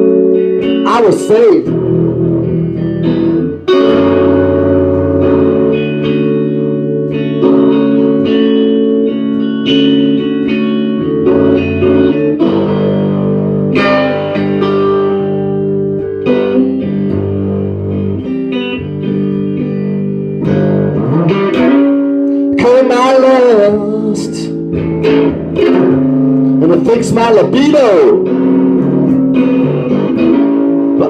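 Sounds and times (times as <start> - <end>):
instrumental guitar music: 0.0 - 31.0.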